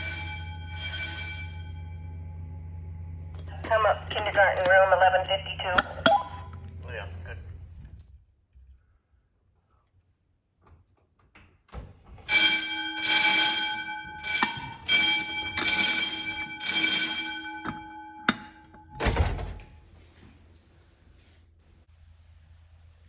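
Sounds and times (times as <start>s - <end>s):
fire alarm bell ringing: 0.0s - 3.4s, 12.3s - 19.8s.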